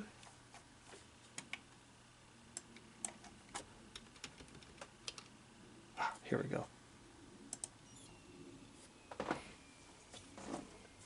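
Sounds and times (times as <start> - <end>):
keyboard keys clicking: 4.0 - 5.3.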